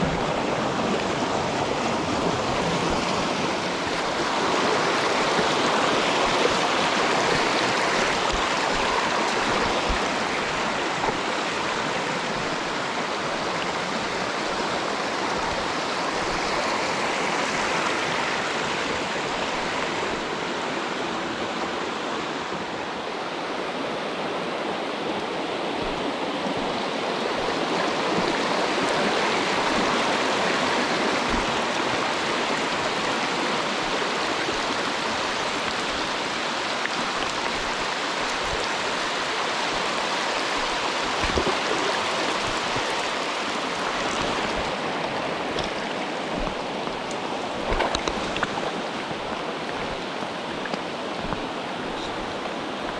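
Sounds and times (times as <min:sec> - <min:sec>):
mountain stream flowing: 0:00.0 - 0:52.9.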